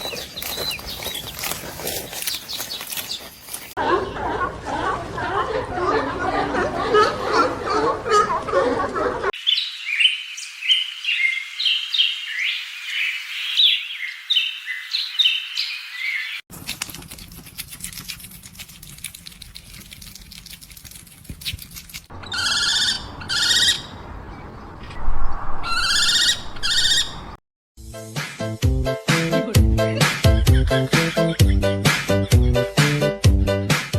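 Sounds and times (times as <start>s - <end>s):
small birds chirping: 0.0s - 4.2s, 9.4s - 16.4s, 19.2s - 27.4s
short high bird calls: 22.2s - 24.0s, 25.6s - 27.3s.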